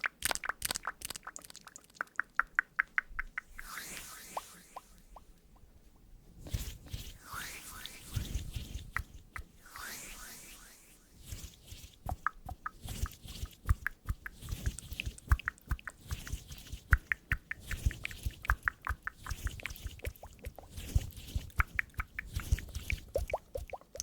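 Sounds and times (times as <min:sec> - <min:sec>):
small clicks and soft taps: 0:12.1 - 0:24.0.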